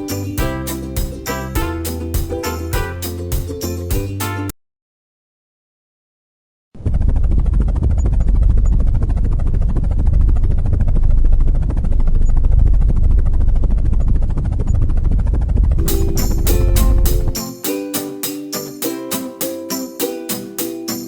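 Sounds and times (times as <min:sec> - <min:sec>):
music: 0:00.0 - 0:04.5, 0:15.8 - 0:21.0.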